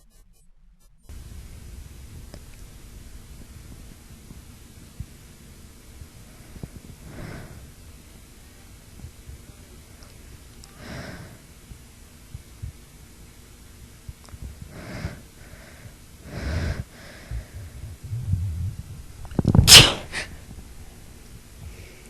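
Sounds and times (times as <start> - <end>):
breathy build-up sounds: 17.3 - 19.1
woman sneezing: 19.7 - 20.3.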